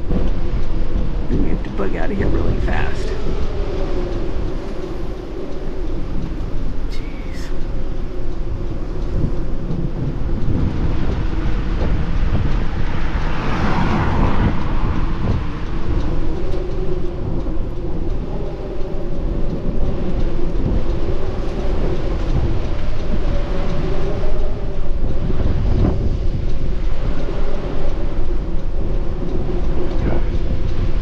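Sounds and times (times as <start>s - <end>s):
car road and engine rumble: 0.0s - 31.0s
droning hum: 0.0s - 31.0s.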